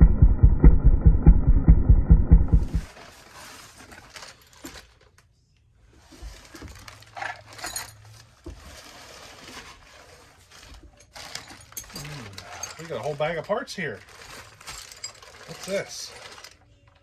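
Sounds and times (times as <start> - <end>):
low engine-like rumble: 0.0 - 2.9
rustling: 2.6 - 5.2, 5.9 - 17.0
metallic clinks of small parts: 7.5 - 8.2, 11.0 - 13.5, 14.3 - 16.6.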